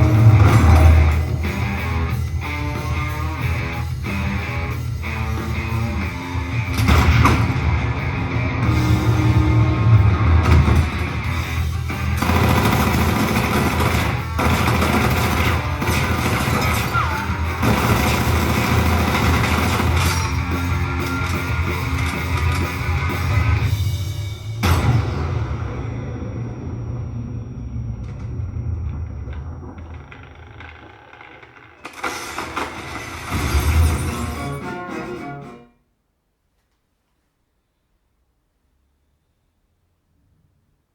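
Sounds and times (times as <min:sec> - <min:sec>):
low rumble: 0:00.0 - 0:04.2, 0:04.9 - 0:22.2, 0:22.8 - 0:31.8
rock music: 0:00.0 - 0:27.0, 0:33.3 - 0:35.7
gunfire bursts: 0:11.6 - 0:23.4
crash with shattering: 0:31.9 - 0:35.0.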